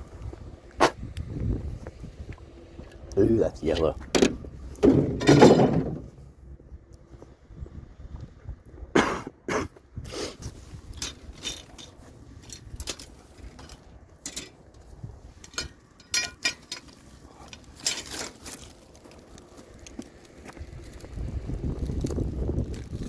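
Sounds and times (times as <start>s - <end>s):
objects clicking and clinking: 11.0s - 14.8s, 15.4s - 20.0s.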